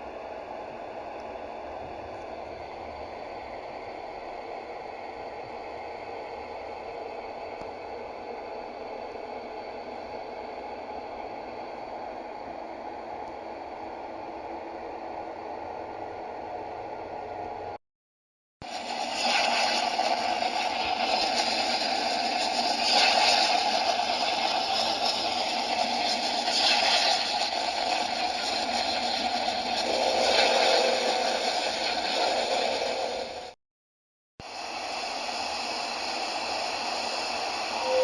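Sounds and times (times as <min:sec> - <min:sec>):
rushing hiss with slow swells: 0:18.6 - 0:33.6, 0:34.4 - 0:38.0.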